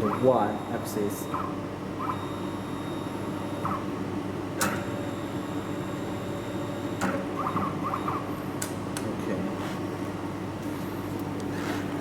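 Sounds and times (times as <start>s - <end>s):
motorised worktable high whine: 0.0s - 8.5s.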